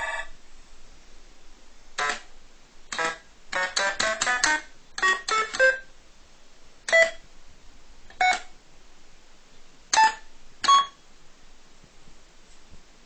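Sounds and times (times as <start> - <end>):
electronic keyboard-like notes: 2.0 - 2.3, 2.9 - 5.9, 6.9 - 7.2.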